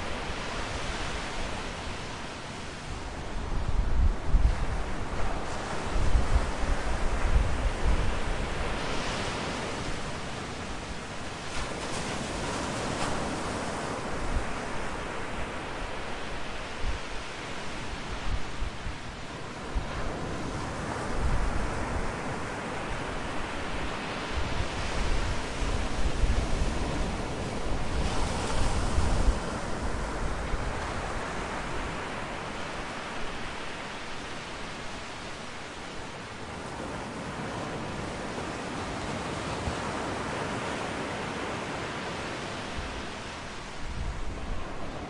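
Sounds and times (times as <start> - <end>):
wind rustling leaves: 0.0 - 45.0
low rumble of gusts: 42.6 - 45.0.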